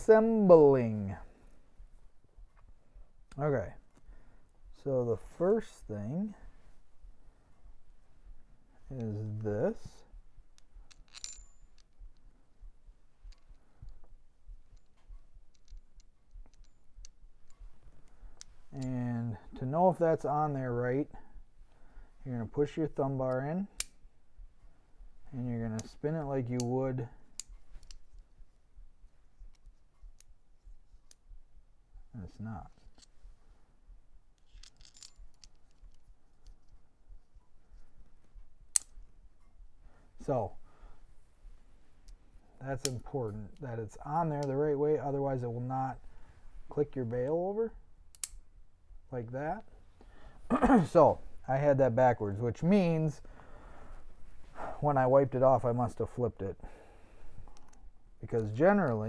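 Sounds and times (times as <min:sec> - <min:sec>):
light clicks of reel parts: 0:01.2 - 0:59.0
small metal parts clicking: 0:10.6 - 0:12.2, 0:14.7 - 0:18.9, 0:26.6 - 0:28.3, 0:34.4 - 0:36.8, 0:38.6 - 0:39.0, 0:42.0 - 0:43.6, 0:48.1 - 0:48.5.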